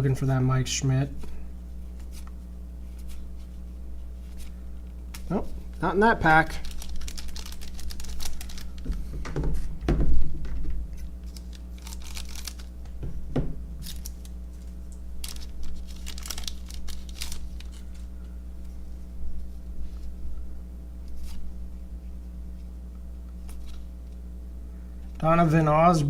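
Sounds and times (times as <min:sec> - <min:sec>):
cards shuffled: 0:04.2 - 0:09.3, 0:11.0 - 0:13.0, 0:13.8 - 0:18.8, 0:23.4 - 0:23.9
card wrapper tearing and crinkling: 0:06.2 - 0:09.0, 0:11.0 - 0:12.8, 0:13.8 - 0:18.1.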